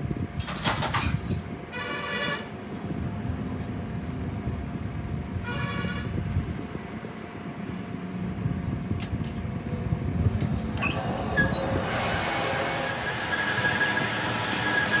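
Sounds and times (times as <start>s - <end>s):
heavy machinery rumbling: 10.4s - 15.0s
high steady squealing tone: 10.8s - 15.0s.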